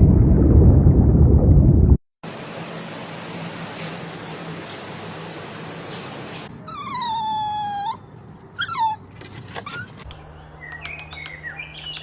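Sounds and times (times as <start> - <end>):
animal whining: 6.6 - 10.1.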